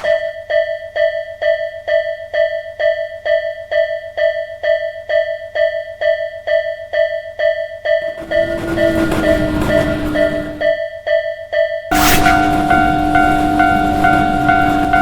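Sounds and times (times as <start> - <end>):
level crossing bell ringing: 11.9 - 15.0.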